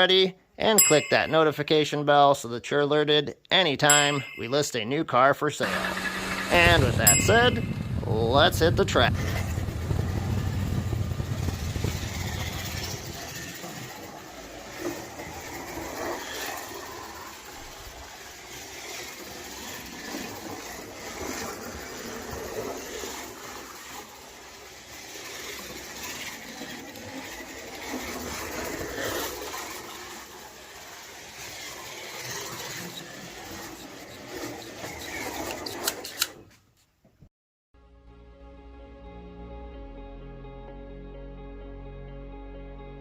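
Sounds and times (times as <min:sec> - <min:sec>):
guide and wheels rattling: 0:05.6 - 0:36.5
slot car motor whirring: 0:05.6 - 0:36.5.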